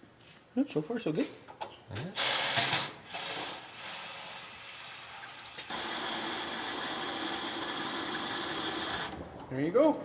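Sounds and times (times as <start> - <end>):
water running from a hose: 3.1 - 9.2.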